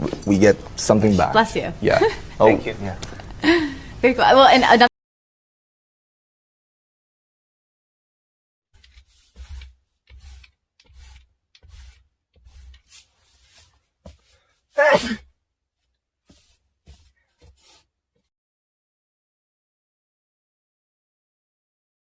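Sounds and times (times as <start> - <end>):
person sneezing loudly: 14.8 - 15.3.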